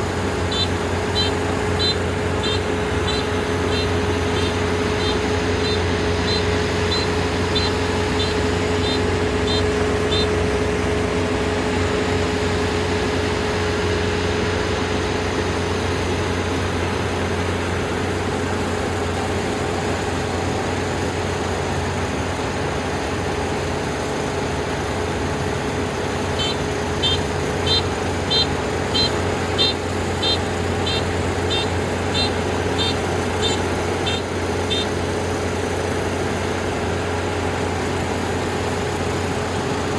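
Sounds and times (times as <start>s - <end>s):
combine harvester engine droning: 0.0s - 39.9s
high electronic warning beep: 0.4s - 10.9s, 26.2s - 35.1s.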